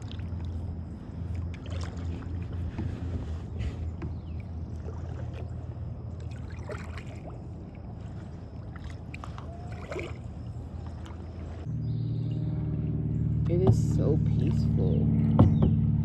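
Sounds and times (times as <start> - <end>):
paddle strokes in water: 0.0 - 11.7
small splashes: 0.0 - 11.7
steady low rumble: 0.0 - 16.0.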